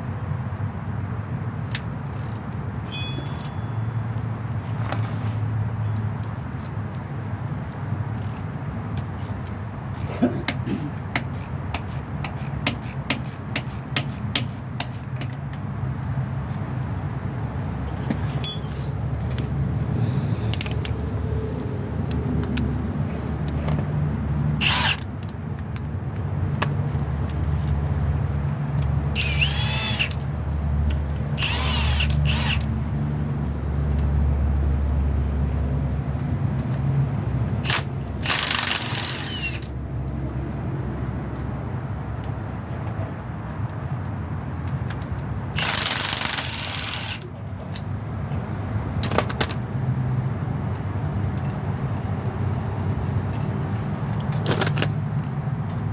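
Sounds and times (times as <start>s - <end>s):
power tool bursts: 29.2s - 30.2s, 31.4s - 32.6s
ratchet clicking: 29.2s - 30.3s, 31.4s - 32.7s, 37.6s - 39.7s, 45.6s - 47.3s.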